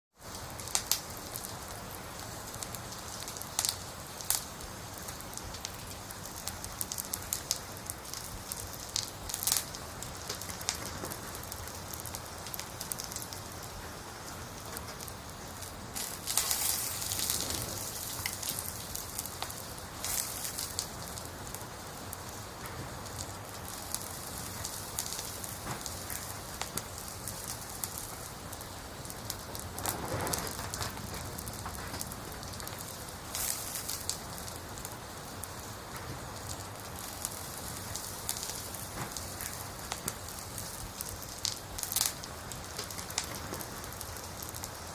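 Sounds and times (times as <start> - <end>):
campfire crackling: 0.2 - 44.9.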